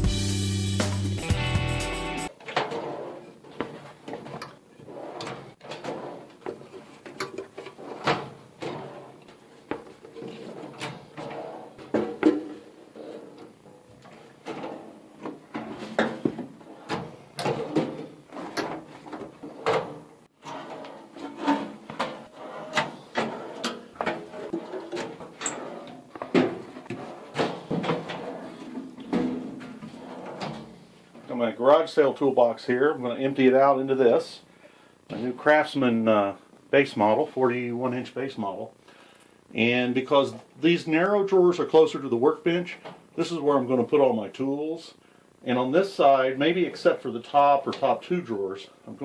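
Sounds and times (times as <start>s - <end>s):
metal drawers knocking and sliding: 2.4s - 30.9s.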